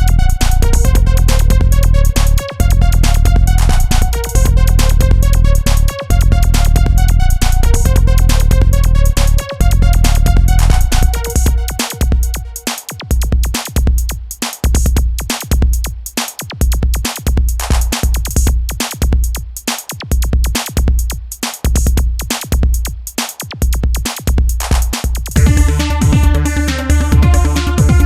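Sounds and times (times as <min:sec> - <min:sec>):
synth chords: 0:00.0 - 0:12.7, 0:25.4 - 0:28.0
deep kick drum pattern: 0:00.0 - 0:28.0
fast hi-hat ticks: 0:00.0 - 0:28.0.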